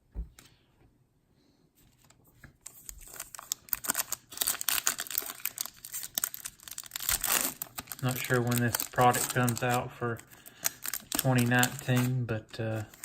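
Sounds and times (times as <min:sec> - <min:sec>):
foil wrapper crinkling and tearing: 0:02.6 - 0:13.0.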